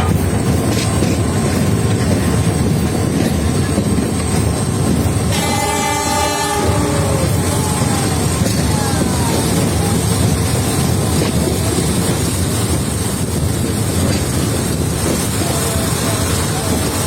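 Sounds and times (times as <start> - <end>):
train horn: 5.2 - 10.0
loud steady low roar: 5.2 - 12.0.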